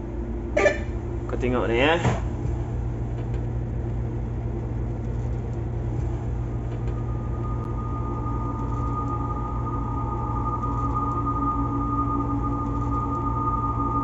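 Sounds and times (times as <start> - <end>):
bus engine idling: 0.0 - 14.0
faint steady high tone: 6.4 - 14.0.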